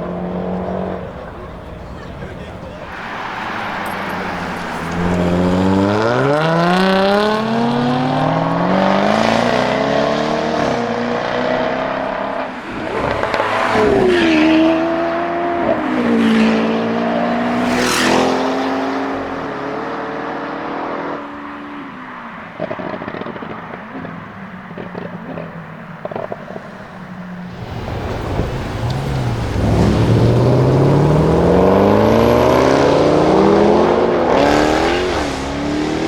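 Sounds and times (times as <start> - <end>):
exhaust cracks: 0.0 - 18.2, 21.9 - 36.0
car engine accelerating hard: 0.0 - 36.0.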